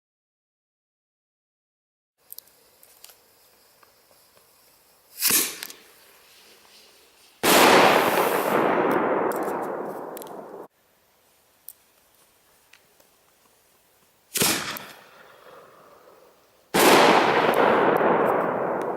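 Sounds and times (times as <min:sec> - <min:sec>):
firework shell bursting bang: 0:07.4 - 0:10.7, 0:14.3 - 0:15.8.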